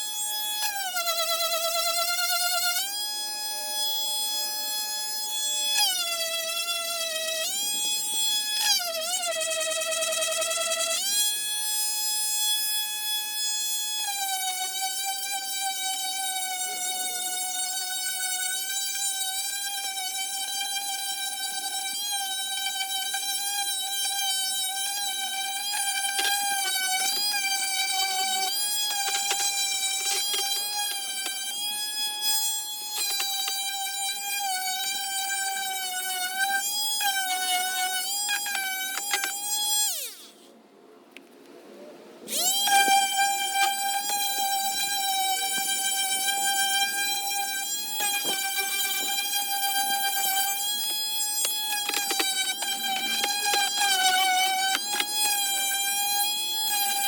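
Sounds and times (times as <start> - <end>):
power sander whining: 24.7 - 34.0, 42.3 - 57.0.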